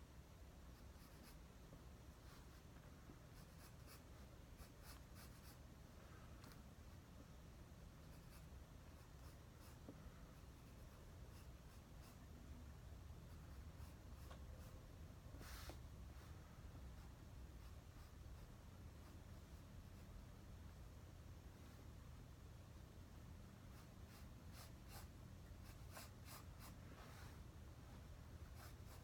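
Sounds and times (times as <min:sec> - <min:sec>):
steady low hum: 0:00.0 - 0:29.0
drawing tool scratching on paper: 0:00.8 - 0:01.4, 0:03.3 - 0:05.6, 0:08.0 - 0:12.2, 0:23.7 - 0:26.8, 0:28.4 - 0:29.0.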